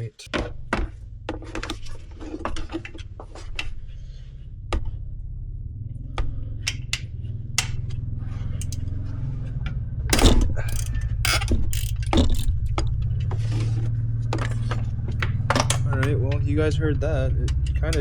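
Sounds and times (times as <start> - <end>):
steady low hum: 0.0 - 18.0
hand tools clicking on metal: 8.6 - 8.9, 10.2 - 12.7, 17.4 - 18.0.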